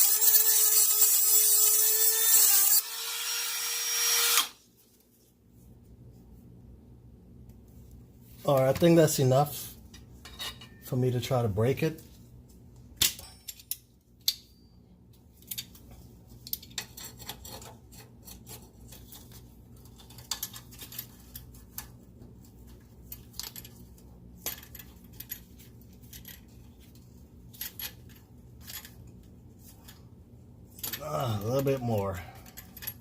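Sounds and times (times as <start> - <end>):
metallic clicks and clanks of pliers: 13.0 - 14.5.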